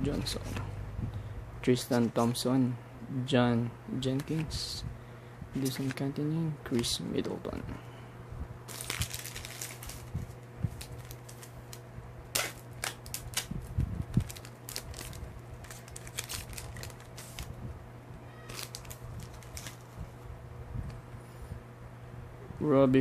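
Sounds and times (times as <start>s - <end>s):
cards being handled: 4.1s - 4.5s, 5.6s - 6.1s, 8.7s - 17.5s, 18.5s - 20.0s
wrapper crinkling and tearing: 8.7s - 17.6s, 18.5s - 20.0s.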